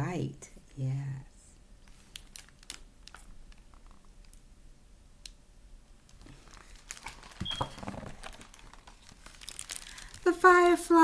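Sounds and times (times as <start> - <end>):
book pages clicking and rustling: 6.0 - 10.3.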